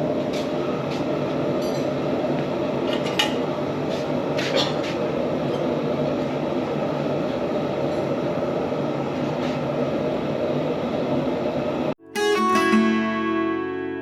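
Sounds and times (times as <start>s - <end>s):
plucked-string background music: 12.0s - 14.0s.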